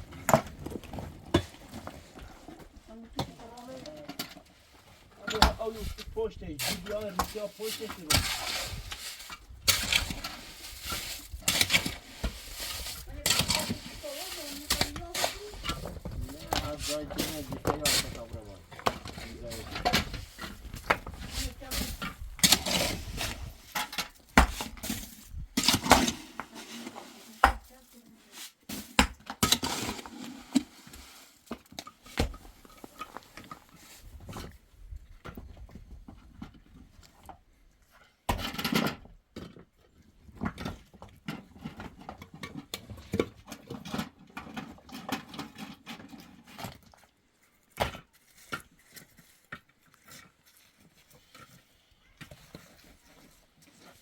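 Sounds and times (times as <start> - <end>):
voices: 13.1 - 20.1.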